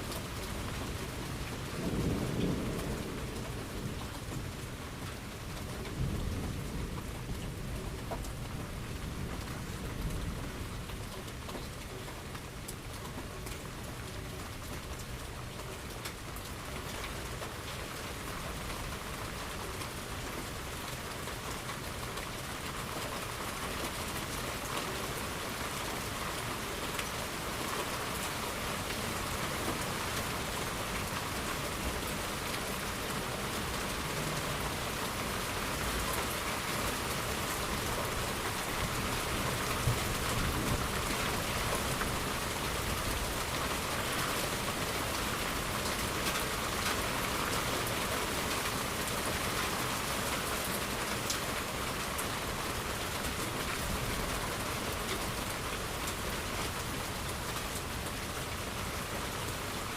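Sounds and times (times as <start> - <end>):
steady rain falling: 0.0 - 59.9
faint low thunder rumble: 0.6 - 12.4.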